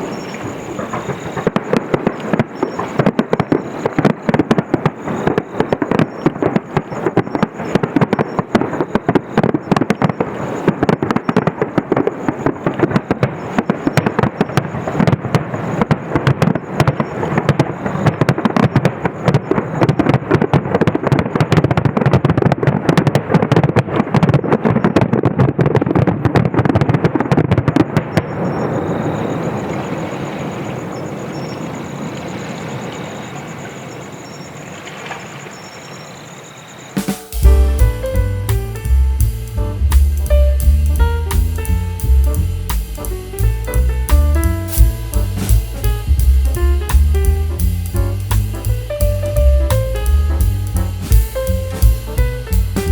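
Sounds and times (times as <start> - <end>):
fireworks bangs and crackling: 0.0 - 52.9
steady noise: 37.0 - 52.9.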